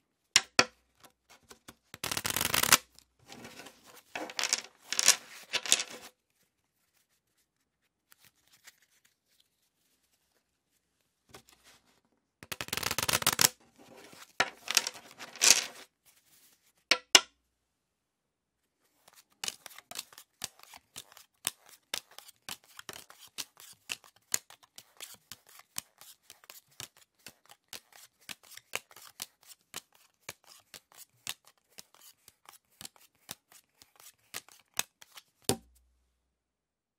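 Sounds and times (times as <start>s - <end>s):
cards riffle-shuffled: 1.4s - 6.1s, 12.4s - 13.5s, 14.1s - 15.9s, 19.0s - 35.6s
cards dealt with crisp snaps: 1.6s - 2.8s, 12.4s - 13.5s, 19.1s - 35.6s
deck tapped square: 35.5s - 35.7s.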